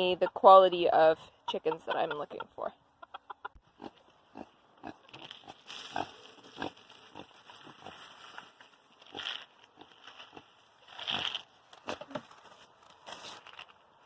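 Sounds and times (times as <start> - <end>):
rustling: 5.0 - 14.0.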